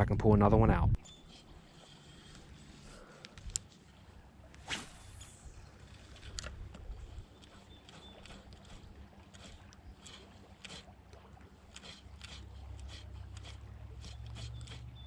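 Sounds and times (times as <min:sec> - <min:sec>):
wind: 0:00.0 - 0:15.0
creek water: 0:01.0 - 0:15.0
reel clicks: 0:01.0 - 0:15.0
fishing rod swish: 0:04.5 - 0:06.2, 0:11.7 - 0:14.9.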